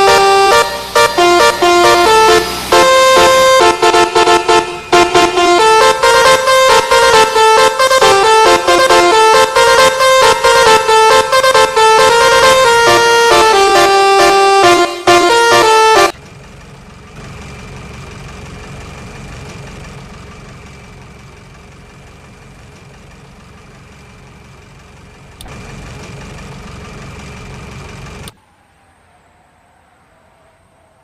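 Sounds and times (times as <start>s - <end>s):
bus horn playing a melody: 0.0s - 16.2s
vehicle engine and road rumble: 0.0s - 31.0s.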